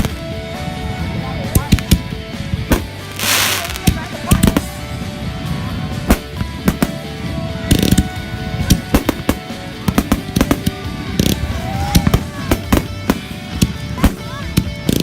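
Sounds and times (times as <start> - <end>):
fireworks bangs and pops: 0.0 - 0.3, 1.5 - 15.0
high crackling fizz: 3.0 - 4.2.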